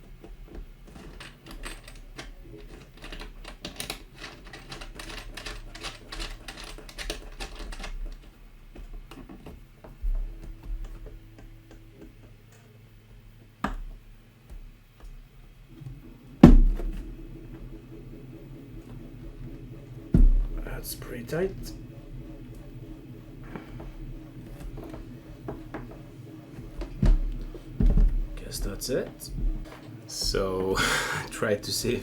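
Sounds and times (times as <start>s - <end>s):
small clicks and taps: 0.0s - 16.0s.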